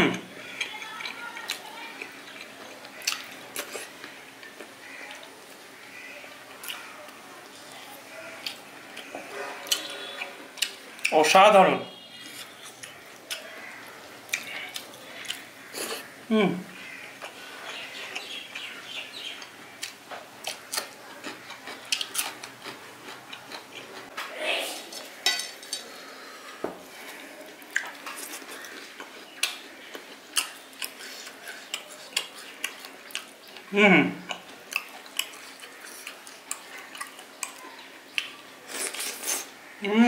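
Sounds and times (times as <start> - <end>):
person chewing and lip-smacking: 14.3 - 16.0, 17.2 - 24.1, 27.7 - 33.6, 34.2 - 39.5
slurping: 38.6 - 39.5.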